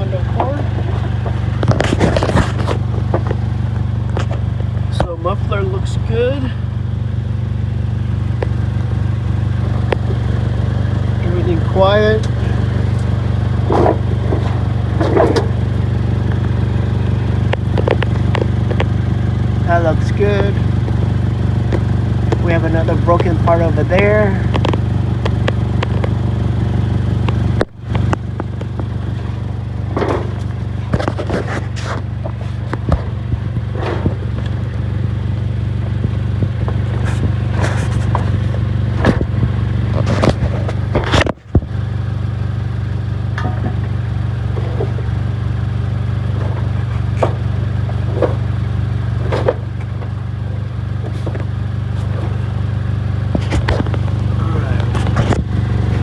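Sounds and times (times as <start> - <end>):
car engine idling: 0.0 - 56.0
scrapes and clicks: 0.3 - 5.1, 27.2 - 34.9, 36.5 - 41.7, 53.3 - 56.0.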